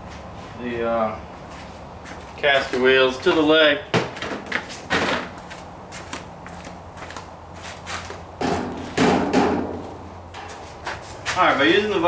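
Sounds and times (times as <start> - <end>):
metal knocks and clatter: 8.4 - 10.6.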